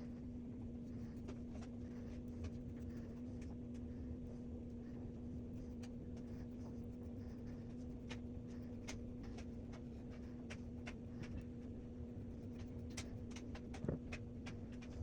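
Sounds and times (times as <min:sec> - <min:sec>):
low hum: 0:00.0 - 0:15.0
paintbrush scratching and tapping: 0:05.3 - 0:15.0.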